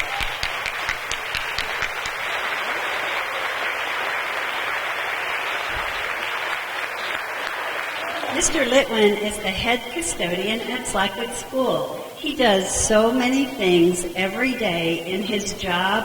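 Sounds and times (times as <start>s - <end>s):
audience applauding: 0.0s - 10.0s.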